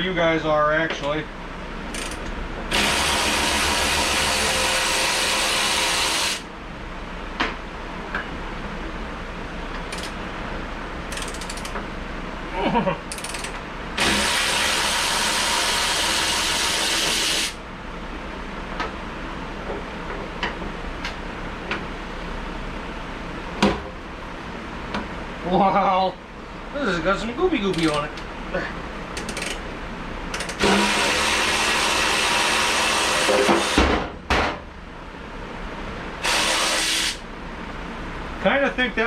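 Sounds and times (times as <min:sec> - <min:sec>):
fan hum: 0:00.0 - 0:39.0
power tool motor running: 0:02.7 - 0:06.4, 0:14.0 - 0:17.6, 0:30.6 - 0:33.8, 0:36.2 - 0:37.2.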